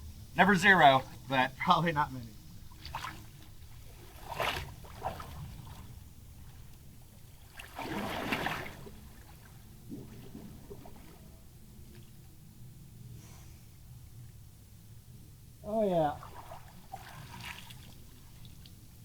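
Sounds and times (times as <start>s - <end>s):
water splashing from swimming: 2.7s - 6.7s, 7.4s - 12.2s, 15.9s - 18.8s.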